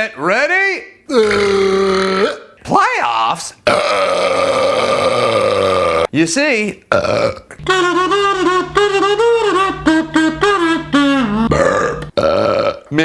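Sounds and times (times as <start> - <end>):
man belching loudly: 1.1 - 2.5, 3.6 - 6.1, 6.9 - 12.9.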